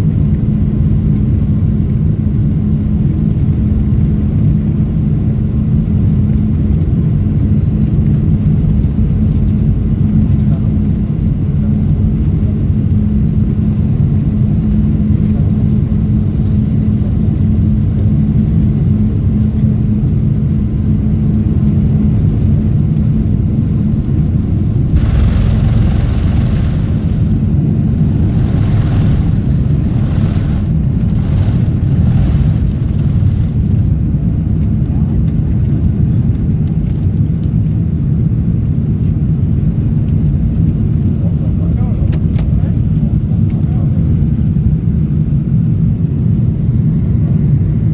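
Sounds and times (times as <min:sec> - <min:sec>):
airplane engine rumble: 0:00.0 - 0:47.9
steady hum: 0:22.0 - 0:34.3
hissing rush: 0:24.5 - 0:33.9.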